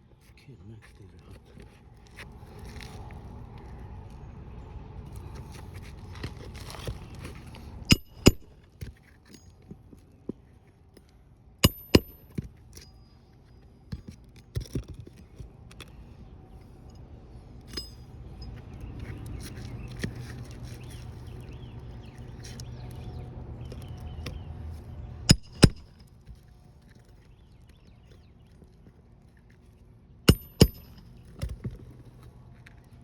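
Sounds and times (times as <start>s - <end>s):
low steady rumble: 0.0s - 33.0s
metallic clinks of hand tools: 7.9s - 8.5s, 11.6s - 13.1s, 17.7s - 18.6s, 30.3s - 31.1s.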